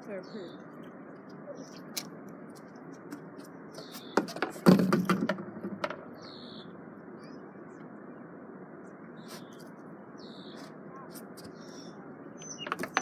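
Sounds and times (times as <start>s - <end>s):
bird chirps: 3.7s - 4.2s, 6.2s - 7.8s, 9.2s - 10.7s, 11.4s - 13.0s.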